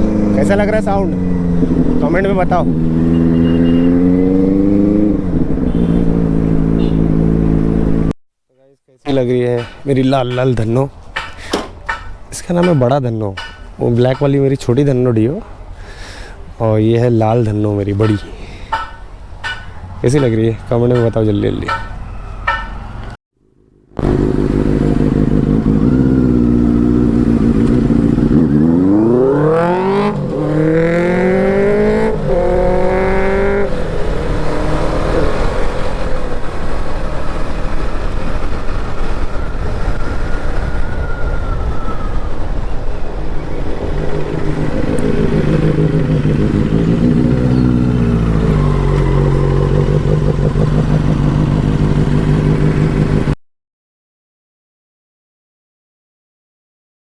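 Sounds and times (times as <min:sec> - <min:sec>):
motorcycle engine accelerating: 0:00.0 - 0:08.2, 0:23.4 - 0:41.8, 0:42.9 - 0:53.4.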